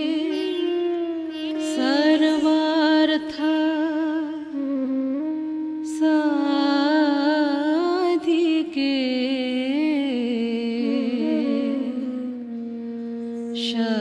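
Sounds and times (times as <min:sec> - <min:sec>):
wordless vocal melody: 0:10.3 - 0:14.0.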